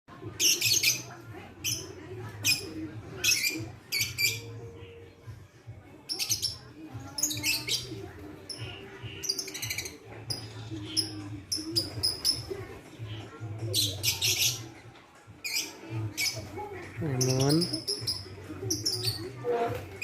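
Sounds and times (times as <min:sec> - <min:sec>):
bird chattering and trilling: 0:00.3 - 0:04.6, 0:06.0 - 0:14.8, 0:15.4 - 0:19.4.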